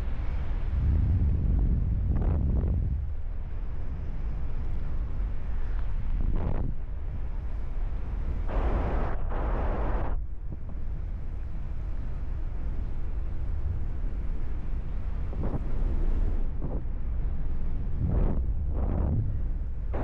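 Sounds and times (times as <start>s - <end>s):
wind buffeting microphone: 0.0s - 8.4s, 13.5s - 20.0s.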